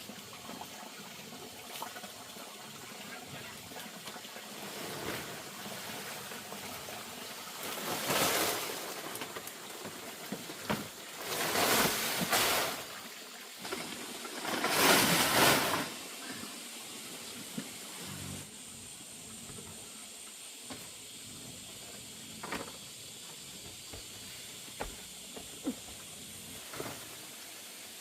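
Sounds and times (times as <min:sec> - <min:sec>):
water pouring and splashing: 0:00.0 - 0:18.2
faint steady background noise: 0:00.0 - 0:28.0.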